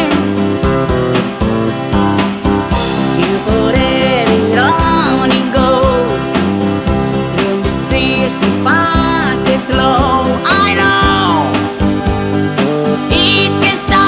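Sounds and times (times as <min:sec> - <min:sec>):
country rock song: 0:00.0 - 0:14.0
gliding melody line: 0:02.6 - 0:06.4.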